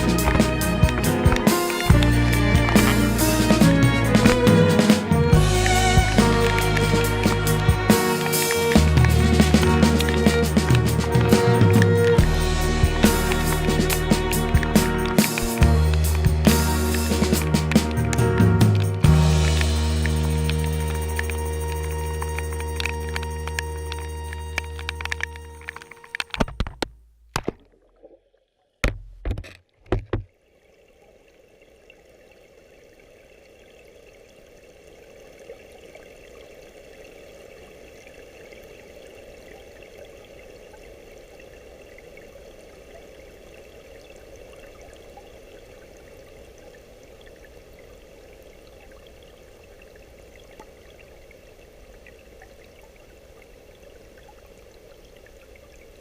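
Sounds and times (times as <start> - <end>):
water rushing: 0.0 - 56.0.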